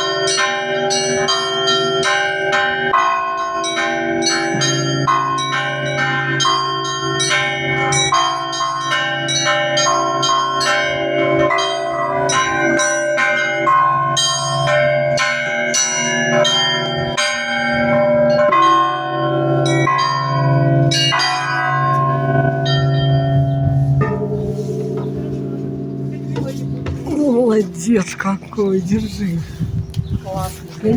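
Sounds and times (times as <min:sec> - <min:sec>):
small high church bells: 0:00.0 - 0:29.2
large low bell humming: 0:00.0 - 0:29.9.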